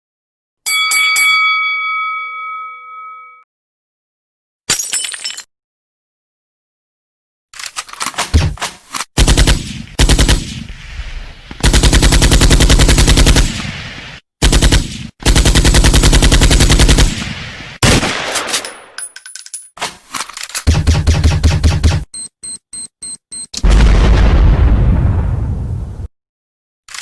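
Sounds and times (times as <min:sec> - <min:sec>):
machine-gun bursts: 0:09.2 - 0:10.6, 0:11.6 - 0:13.6, 0:14.4 - 0:17.2.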